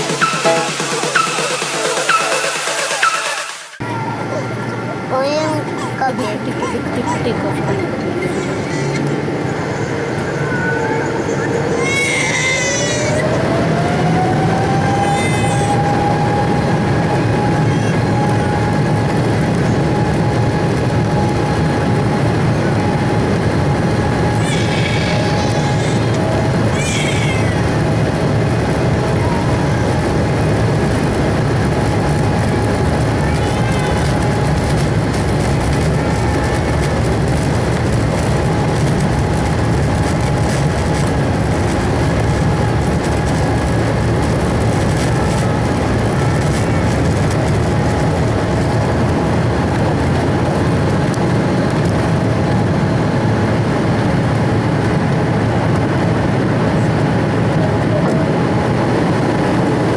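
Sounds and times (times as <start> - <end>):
jet engine rumble and whine: 0.0 - 59.9
rattling and bumping from runway: 12.6 - 59.9.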